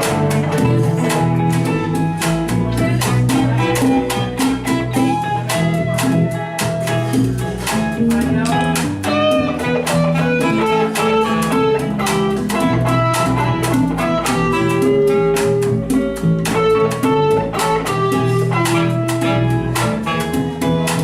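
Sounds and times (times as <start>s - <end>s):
percussive hits: 0.0s - 21.0s
plucked guitar notes: 0.0s - 21.0s.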